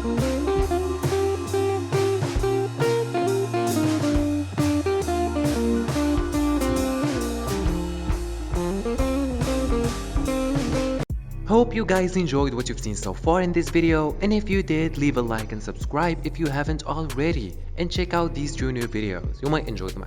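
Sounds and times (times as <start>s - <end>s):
blues guitar tune: 0.0s - 11.1s
drum kit beat: 0.0s - 11.4s, 12.4s - 14.8s, 15.8s - 19.6s.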